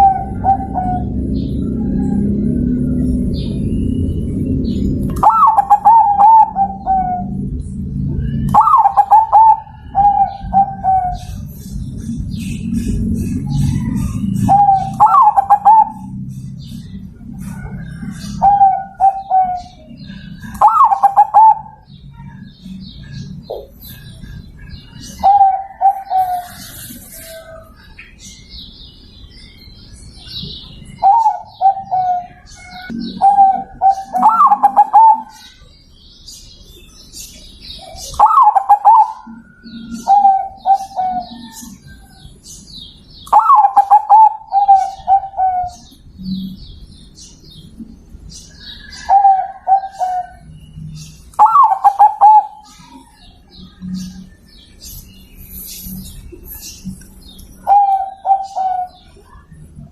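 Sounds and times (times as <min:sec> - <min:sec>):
dove cooing: 0:00.0 - 0:03.4, 0:04.5 - 0:27.8, 0:30.3 - 0:35.6, 0:37.8 - 0:42.3, 0:43.3 - 0:46.5, 0:48.6 - 0:50.6, 0:51.4 - 0:54.4, 0:57.6 - 0:59.9
small birds chirping: 0:00.0 - 0:59.9.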